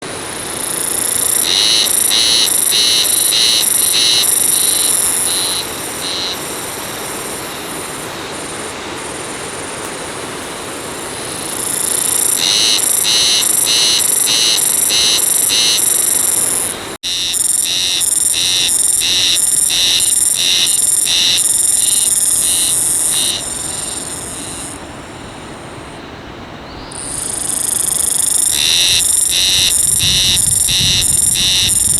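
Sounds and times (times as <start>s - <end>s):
cicada singing rasping pulses: 0.0s - 31.9s.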